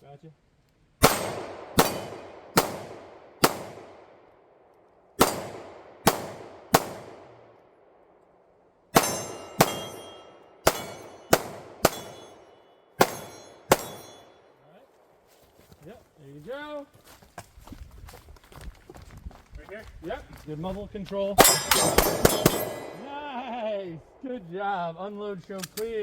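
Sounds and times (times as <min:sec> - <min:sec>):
pistol shots with echo: 0:01.0 - 0:04.3, 0:05.2 - 0:07.6, 0:08.9 - 0:14.5, 0:21.4 - 0:23.3
steel targets ringing: 0:09.0 - 0:14.4, 0:21.4 - 0:23.1.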